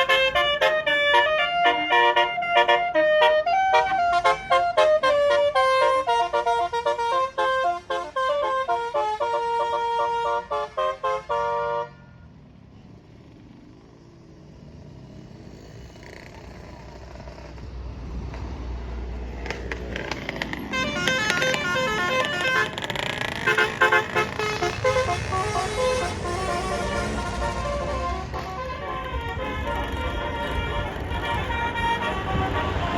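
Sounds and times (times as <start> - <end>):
multi-tone musical air horn: 0.0 - 12.2, 20.6 - 32.9
traffic noise: 0.0 - 32.9
low engine rumble: 16.0 - 32.9.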